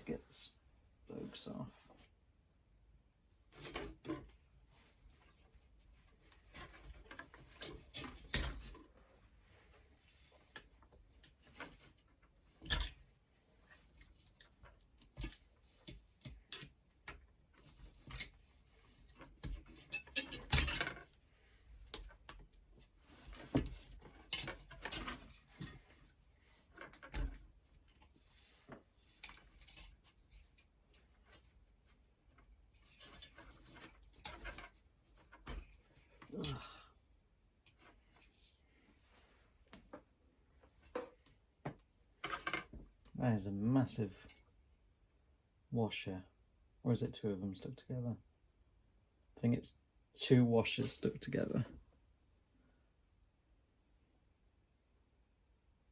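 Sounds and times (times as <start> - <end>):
metallic clinks of tools and parts: 19.1 - 21.1, 29.2 - 31.1.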